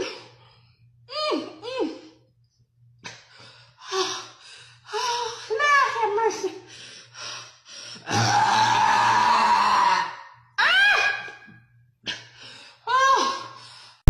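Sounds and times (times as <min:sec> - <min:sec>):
long loud burp: 0:08.1 - 0:09.5.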